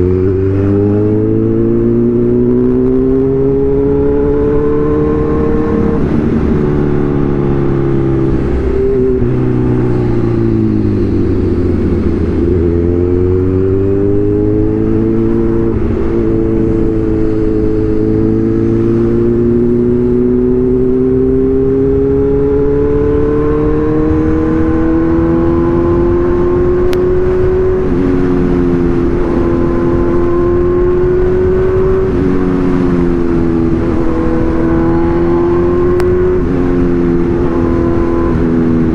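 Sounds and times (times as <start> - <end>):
motorcycle engine and exhaust: 0.0 - 38.9.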